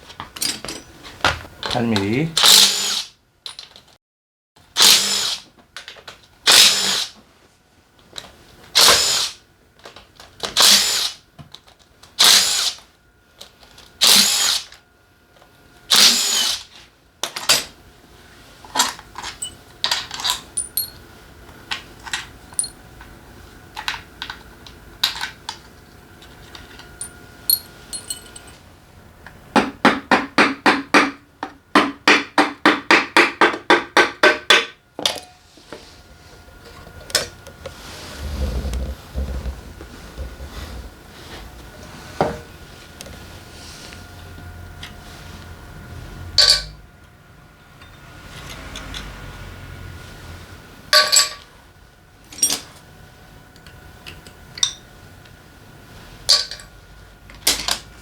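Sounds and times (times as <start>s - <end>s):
power tool bursts: 2.4s - 3.1s, 4.8s - 5.4s, 6.5s - 7.1s, 8.8s - 9.4s, 10.6s - 11.2s, 12.2s - 12.8s, 14.0s - 14.7s, 15.9s - 16.7s
clinks of small metal parts: 18.8s - 21.0s, 22.0s - 22.8s, 26.5s - 28.6s, 46.4s - 46.7s, 52.3s - 52.8s.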